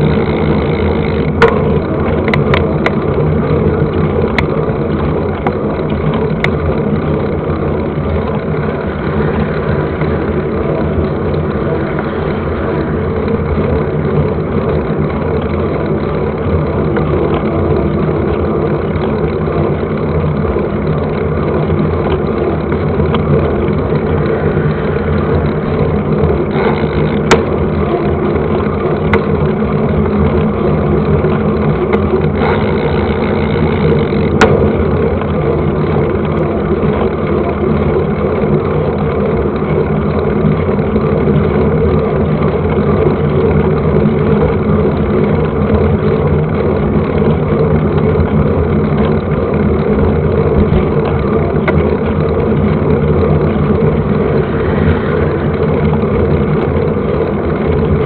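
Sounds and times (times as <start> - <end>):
mountain bike trail rattle: 0.0 - 58.0
wind: 0.0 - 58.0.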